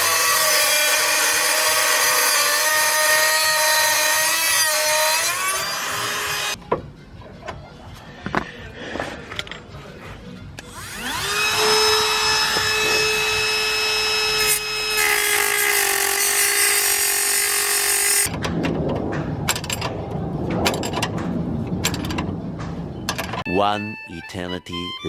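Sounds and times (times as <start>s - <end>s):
cutting disc grinding metal: 0.0s - 6.6s, 10.6s - 18.3s
rotary tool whining: 10.6s - 18.3s.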